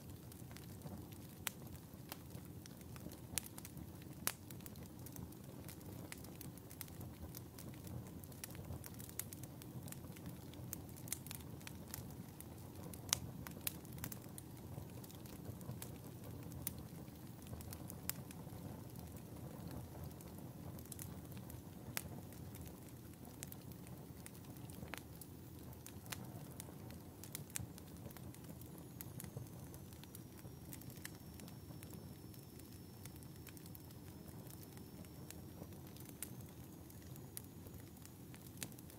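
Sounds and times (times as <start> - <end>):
logs crackling and popping: 0.0 - 38.9
low rumble of flames: 0.0 - 38.9
faint high whistle: 28.8 - 38.0.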